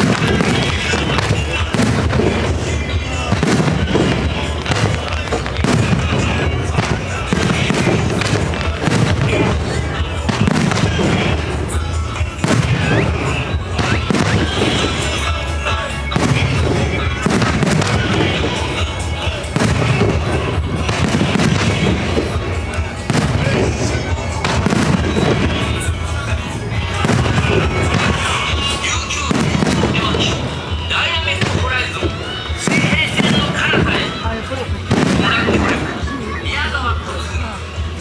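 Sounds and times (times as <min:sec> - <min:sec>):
fireworks booming: 0:00.0 - 0:38.0
fireworks crackling: 0:00.0 - 0:38.0
music over sound system: 0:00.0 - 0:38.0.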